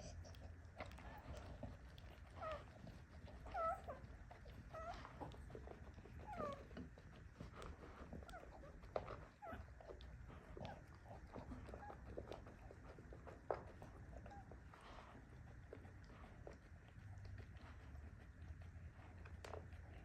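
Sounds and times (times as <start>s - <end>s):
puppies whimpering: 0.2s - 12.7s.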